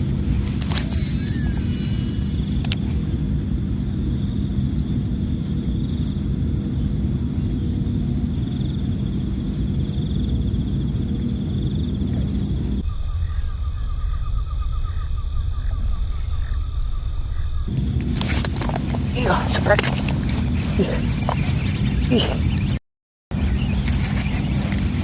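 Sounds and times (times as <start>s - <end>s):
low outdoor rumble: 0.0s - 25.0s
faint high insect buzz: 0.7s - 12.9s.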